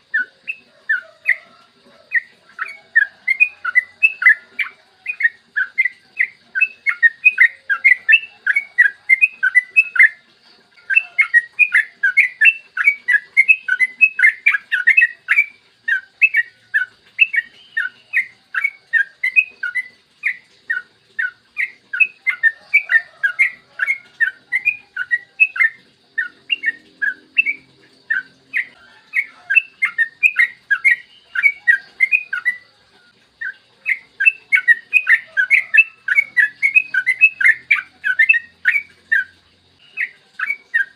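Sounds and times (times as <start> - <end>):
bulbul chirping song: 0.0 - 40.9.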